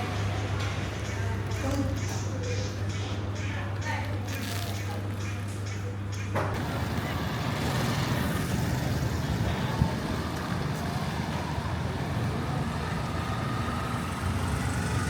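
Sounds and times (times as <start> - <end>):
passing vehicle engines and tyres: 6.6 - 15.0.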